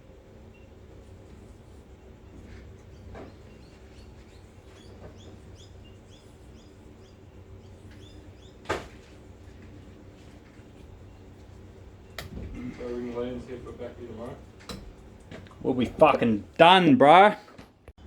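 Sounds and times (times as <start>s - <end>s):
faint steady hum: 0.0s - 18.0s
bird chirping: 2.8s - 8.7s.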